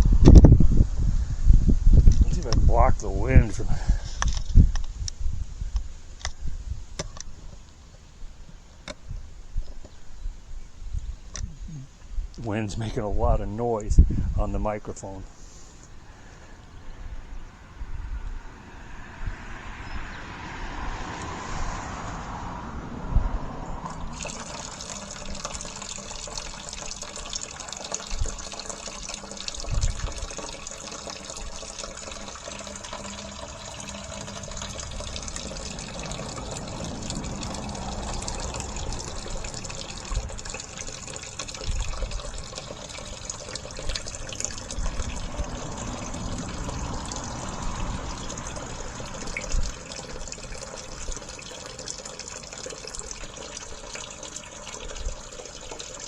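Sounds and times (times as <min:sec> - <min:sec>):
wind buffeting microphone: 0:00.0 - 0:07.3, 0:09.0 - 0:14.7, 0:16.7 - 0:25.9, 0:28.0 - 0:30.5, 0:31.4 - 0:51.3
water pouring from drain pipe: 0:23.8 - 0:56.0.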